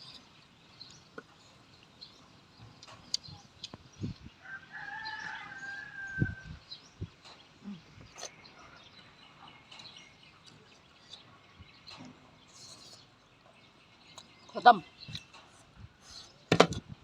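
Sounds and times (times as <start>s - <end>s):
rooster crowing: 4.4s - 6.5s.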